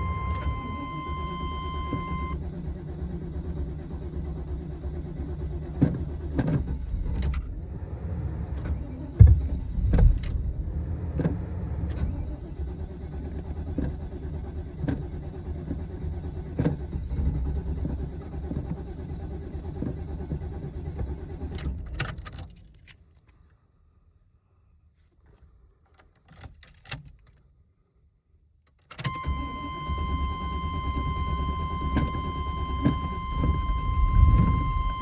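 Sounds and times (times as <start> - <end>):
truck engine idling: 29.3 - 35.0.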